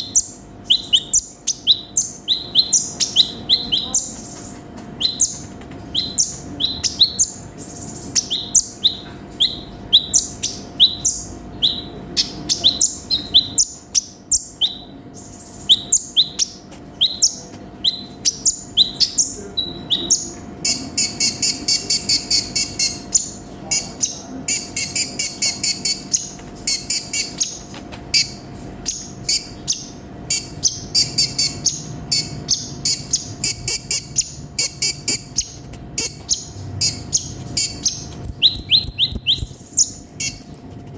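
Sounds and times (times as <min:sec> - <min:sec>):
bird trilling chatter: 0:00.0 - 0:40.8
bird singing high falling notes: 0:38.2 - 0:40.7.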